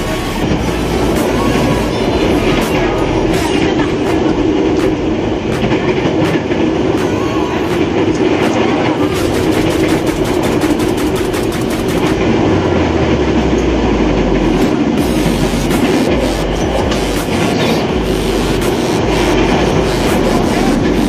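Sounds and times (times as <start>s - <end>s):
electric train motor hum: 9.0s - 21.0s.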